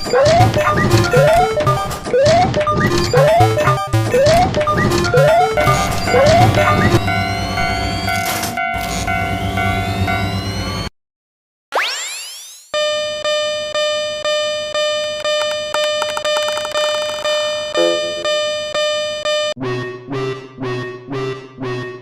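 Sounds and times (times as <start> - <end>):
level crossing warning bell: 3.1 - 10.9, 12.9 - 19.5.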